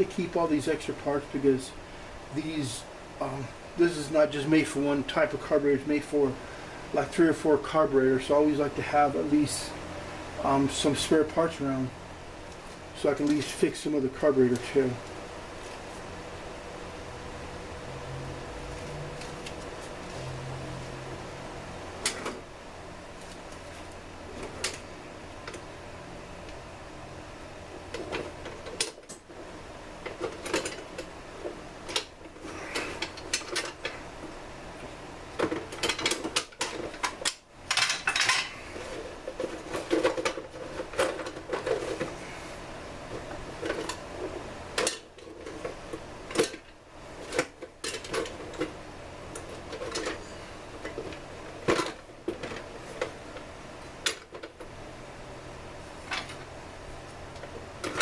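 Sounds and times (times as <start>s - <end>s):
low steady hum: 0.0s - 58.0s
small hard parts clattering: 30.0s - 31.1s, 31.9s - 34.0s, 35.4s - 42.2s, 43.1s - 53.2s.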